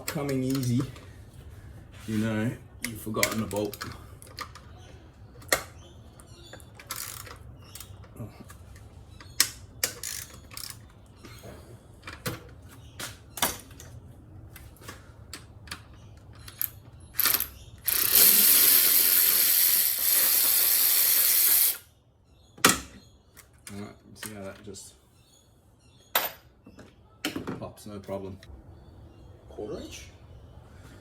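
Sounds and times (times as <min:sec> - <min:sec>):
ratchet wrench clicking: 0:06.9 - 0:07.9, 0:09.9 - 0:10.8, 0:16.4 - 0:21.9
loud steady whirr: 0:17.2 - 0:21.8.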